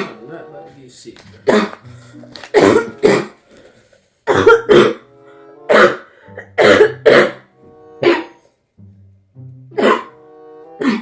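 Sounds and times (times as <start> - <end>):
background music with held notes: 0.0 - 11.0
woman coughing: 1.4 - 1.8, 2.5 - 3.4, 4.3 - 5.0, 5.7 - 7.4, 8.0 - 8.4, 9.8 - 10.1, 10.8 - 11.0.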